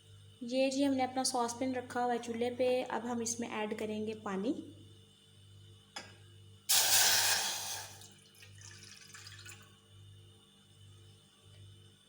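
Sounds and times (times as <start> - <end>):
water pouring into saucepan: 6.7 - 9.8
water trickling: 7.9 - 9.7.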